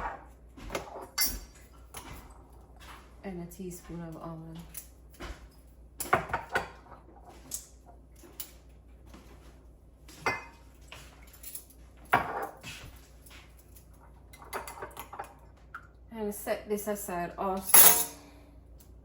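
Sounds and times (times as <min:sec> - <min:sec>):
kitchen utensils and dishes clinking: 0:00.0 - 0:03.1, 0:10.2 - 0:10.6, 0:12.1 - 0:13.4, 0:14.3 - 0:15.4, 0:17.6 - 0:18.3
wet ingredients being mixed: 0:01.7 - 0:05.5.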